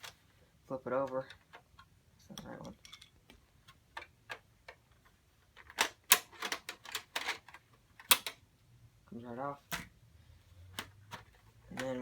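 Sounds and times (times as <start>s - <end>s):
plastic casing clicks and snaps: 5.6s - 8.4s.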